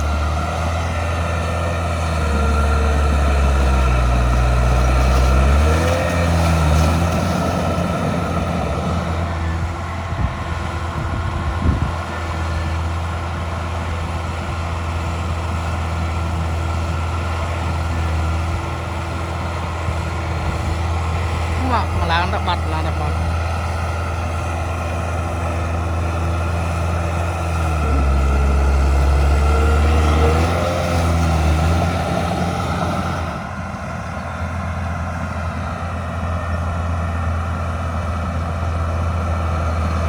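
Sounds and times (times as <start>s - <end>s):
heavy diesel engine running: 0.0s - 40.0s.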